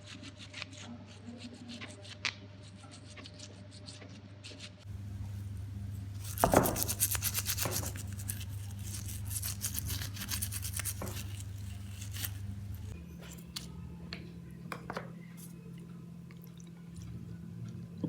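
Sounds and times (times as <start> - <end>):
steady low hum: 4.9 - 18.0.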